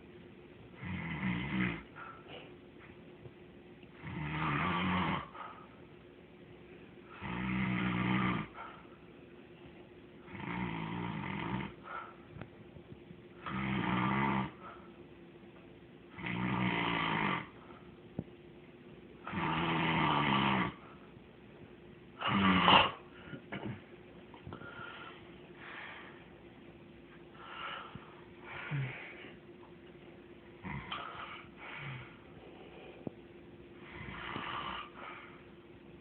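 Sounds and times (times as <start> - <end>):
loud snoring: 0.8 - 2.0, 4.0 - 5.4, 7.1 - 8.6, 10.3 - 11.8, 13.4 - 14.6, 16.1 - 17.6, 19.2 - 20.8, 22.2 - 23.0, 33.9 - 35.0.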